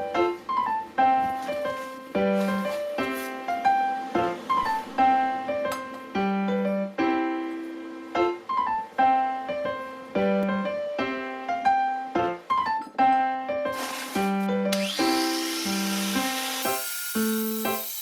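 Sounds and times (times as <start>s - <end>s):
piano melody: 0.0s - 18.0s.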